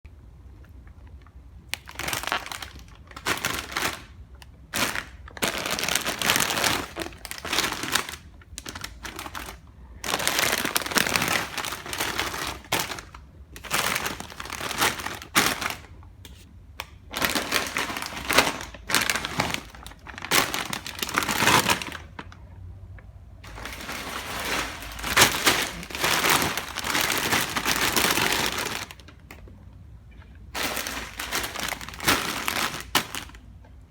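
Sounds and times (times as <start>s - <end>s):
chips crunching: 23.5s - 29.3s.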